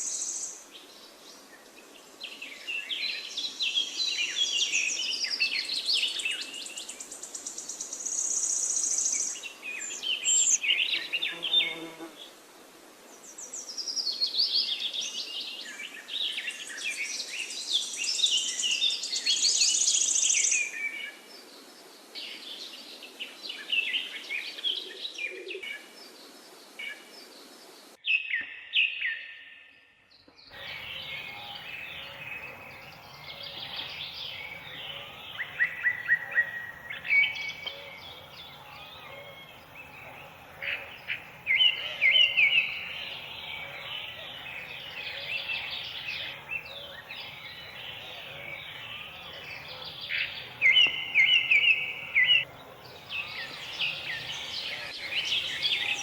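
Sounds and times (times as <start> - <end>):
small birds chirping and singing: 0.0 - 12.0, 13.1 - 56.0
faint steady background noise: 0.0 - 28.1.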